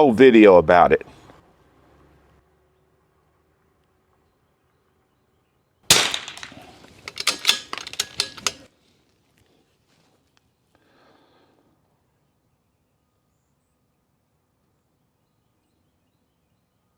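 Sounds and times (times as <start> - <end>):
rifle bolt clicking: 5.9 - 8.6
rifle shot: 5.9 - 8.6.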